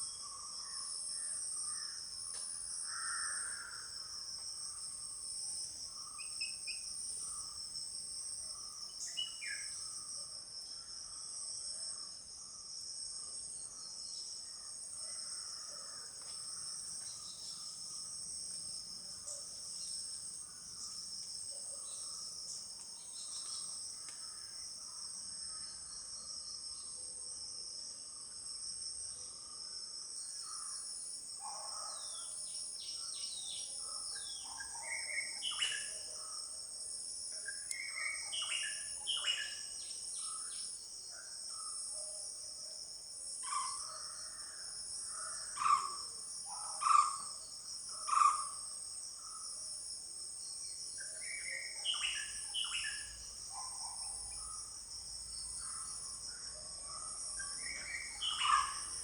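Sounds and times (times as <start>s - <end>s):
insects chorus pulsing: 29.5s - 59.0s.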